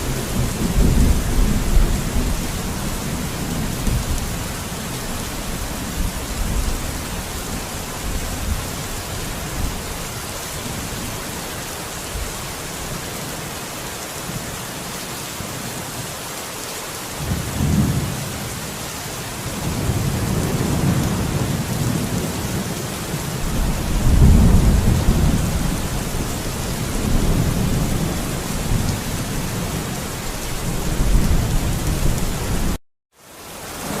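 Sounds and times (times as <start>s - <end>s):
thunder rumbling: 0.0s - 11.1s, 23.4s - 32.8s
steady rain: 0.0s - 34.0s.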